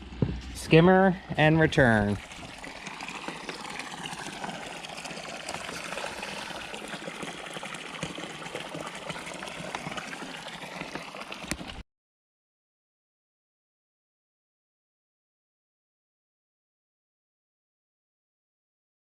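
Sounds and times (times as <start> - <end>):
water running and splashing: 0.6 - 11.8.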